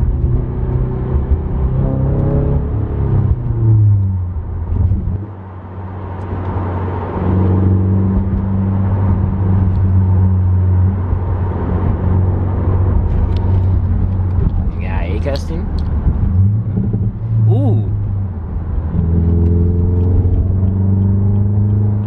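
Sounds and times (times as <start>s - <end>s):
car engine droning through exhaust: 0.0s - 22.0s.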